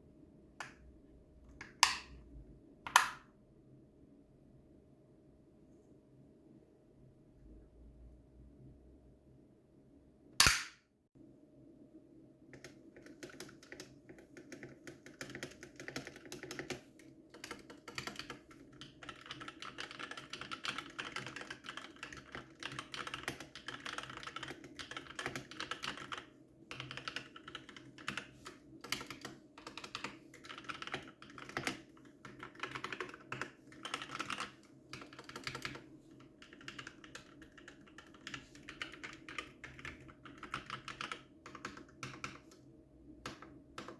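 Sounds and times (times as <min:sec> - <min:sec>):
mechanical keyboard typing: 0:12.6 - 0:42.6, 0:43.2 - 0:43.9.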